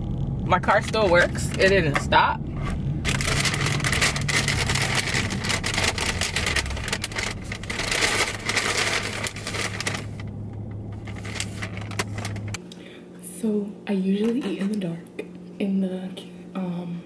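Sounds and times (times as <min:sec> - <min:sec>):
car engine humming inside cabin: 0:00.0 - 0:12.6
crackling and clicking noise: 0:00.8 - 0:12.6.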